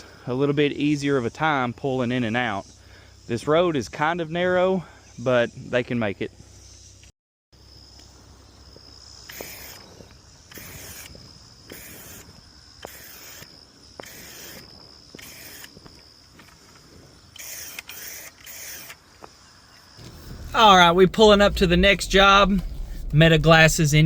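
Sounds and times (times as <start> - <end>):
high hiss of insects: 6.4 - 20.2.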